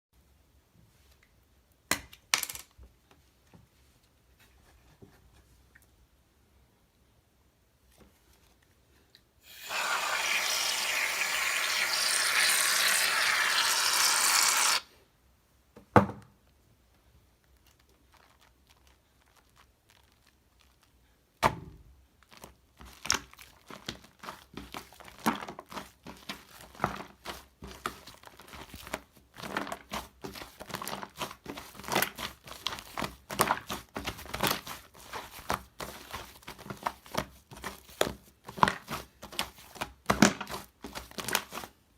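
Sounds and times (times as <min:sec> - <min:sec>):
shaving foam can spraying: 0:09.4 - 0:14.8
slime kneaded by hand: 0:17.4 - 0:41.8.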